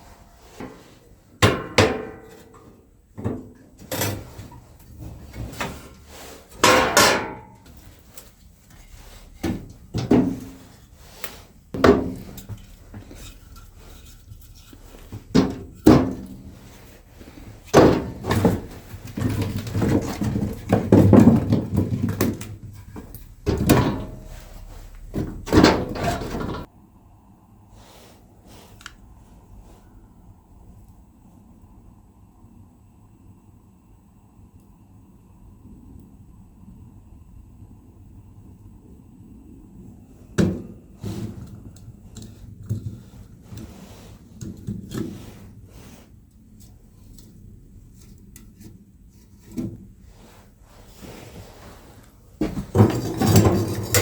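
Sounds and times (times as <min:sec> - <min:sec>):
low steady background noise: 0:00.0 - 0:54.0
objects knocking and clunking: 0:00.5 - 0:26.7, 0:40.4 - 0:43.7, 0:52.4 - 0:54.0.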